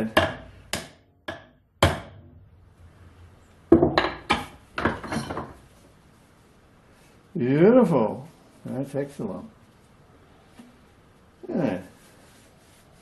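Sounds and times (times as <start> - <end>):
hard objects knocking and clattering: 3.7 - 5.6.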